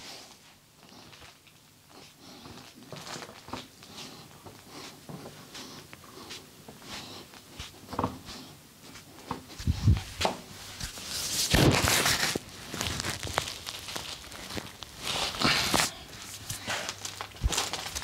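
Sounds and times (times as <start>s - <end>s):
hands rubbing during massage: 3.8s - 13.2s.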